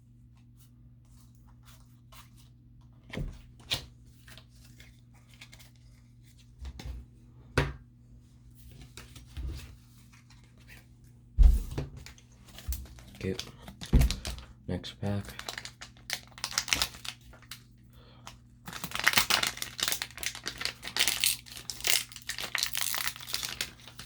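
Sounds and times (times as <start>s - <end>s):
paper cards rustling and sliding: 0.4s - 6.9s
steady low hum: 11.1s - 15.4s
thump: 11.4s - 11.9s.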